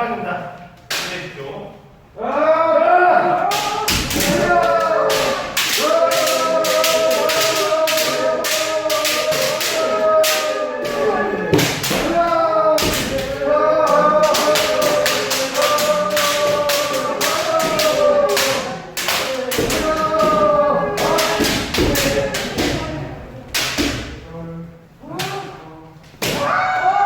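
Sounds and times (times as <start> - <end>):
people shouting: 2.2 - 24.2, 26.2 - 27.0.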